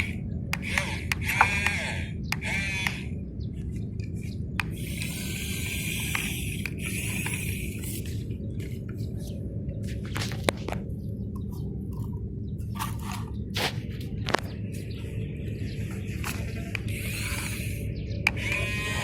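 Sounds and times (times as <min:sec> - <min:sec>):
toy excavator motor humming: 0:00.0 - 0:09.3, 0:14.3 - 0:19.0.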